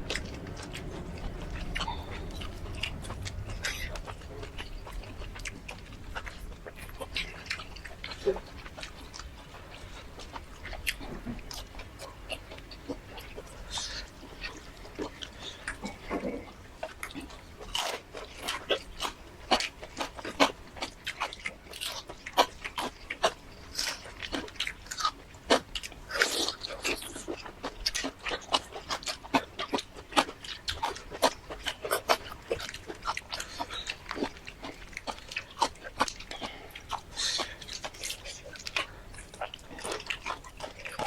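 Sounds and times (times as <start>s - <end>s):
chewing and lip-smacking: 0.0s - 41.0s.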